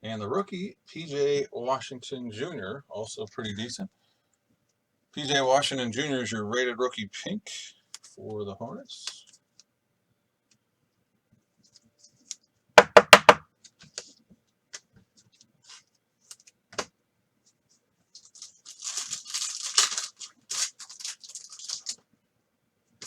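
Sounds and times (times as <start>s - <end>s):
quick knocks: 12.8s - 13.4s
crinkling rustle: 17.7s - 22.1s
foil card pack tearing: 18.2s - 22.0s.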